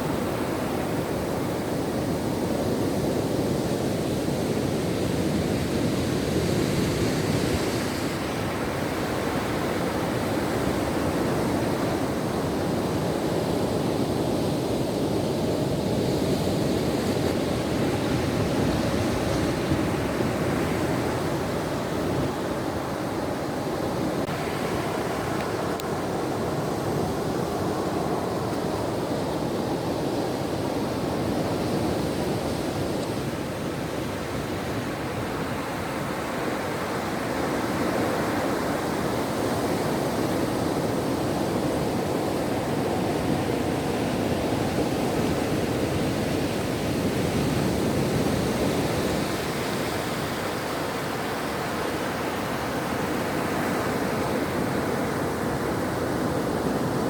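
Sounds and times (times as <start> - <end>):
ocean surf washing onto shore: 0.0 - 57.0.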